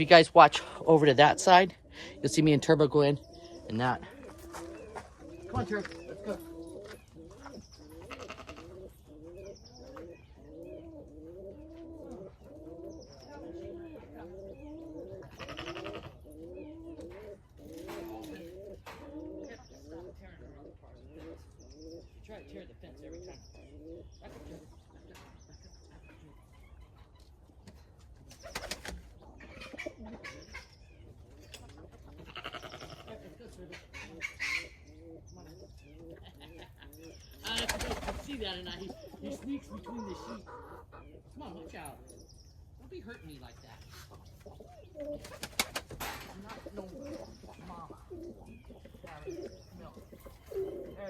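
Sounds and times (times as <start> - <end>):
pigeons cooing: 0.0 - 51.0
wing flapping: 28.4 - 29.1, 37.4 - 38.6, 45.1 - 46.4.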